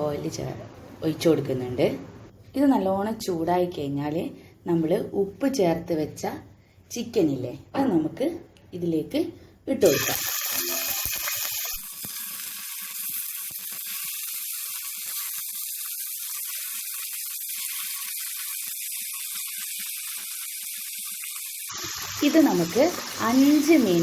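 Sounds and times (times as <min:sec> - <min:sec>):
chicken frying in hot oil: 0:09.9 - 0:24.0.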